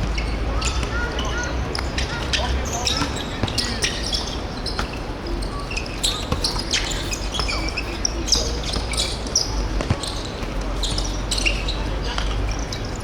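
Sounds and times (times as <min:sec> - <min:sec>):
shoes squeaking on court floor: 0:00.0 - 0:13.0
voices: 0:00.0 - 0:13.0.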